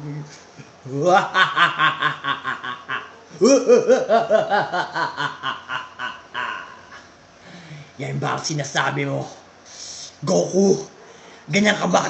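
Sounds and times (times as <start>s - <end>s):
man laughing: 0.9s - 7.1s.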